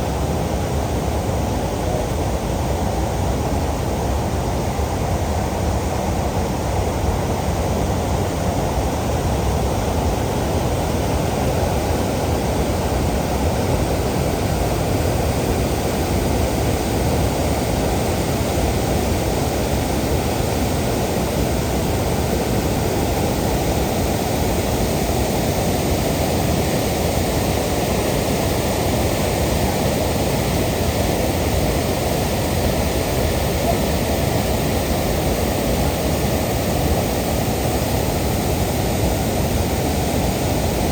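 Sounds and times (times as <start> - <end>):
waterfall roaring: 9.5 - 40.9.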